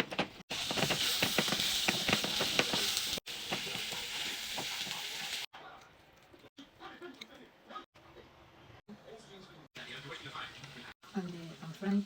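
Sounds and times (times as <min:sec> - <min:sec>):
food sizzling with crackles: 0:00.0 - 0:05.5, 0:09.8 - 0:12.0.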